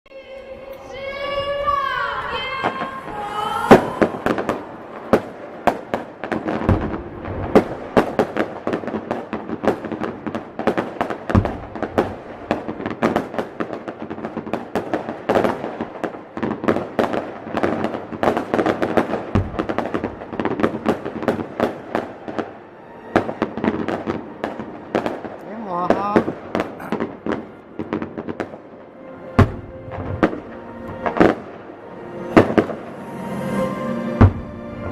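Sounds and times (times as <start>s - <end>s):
fireworks bangs and crackles: 2.5s - 33.6s, 34.2s - 34.9s
deep firework booms: 3.7s - 22.5s, 23.2s - 28.7s, 29.4s - 31.6s.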